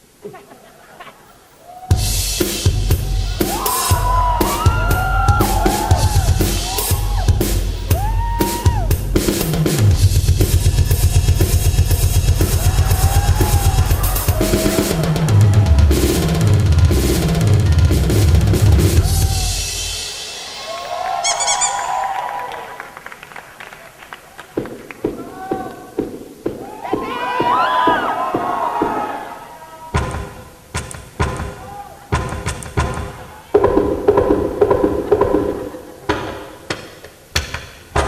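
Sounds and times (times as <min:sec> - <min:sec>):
music with drum kit: 0:01.9 - 0:20.7
fast drum roll: 0:01.9 - 0:21.4
whistle-like sliding effects: 0:20.4 - 0:22.2.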